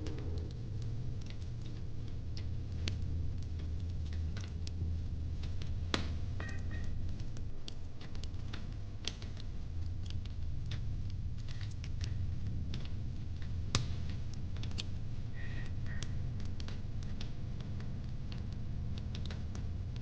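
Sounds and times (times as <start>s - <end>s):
low steady rumble: 0.0s - 20.0s
wood fire crackling: 0.0s - 20.0s.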